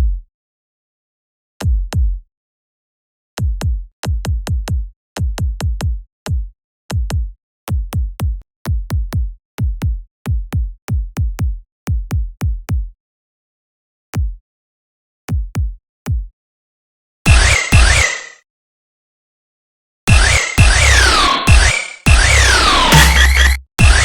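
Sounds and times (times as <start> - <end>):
electronic kick drum thumps: 17.3 - 18.1, 20.1 - 24.0.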